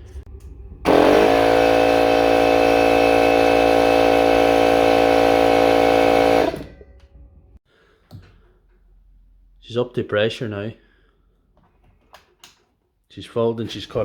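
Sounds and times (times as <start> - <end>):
air compressor motor humming: 0.9 - 6.9.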